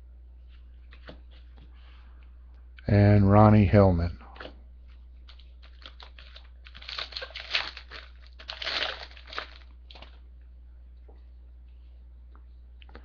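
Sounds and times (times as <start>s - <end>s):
wrapper crinkling and tearing: 5.3s - 10.2s.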